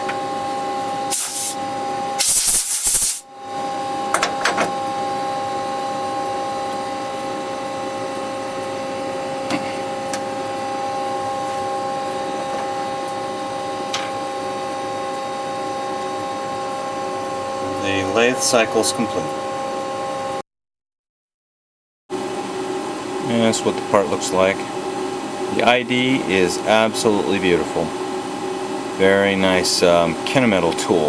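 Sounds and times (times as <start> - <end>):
loud hiss: 1.1 - 1.6, 2.2 - 3.3.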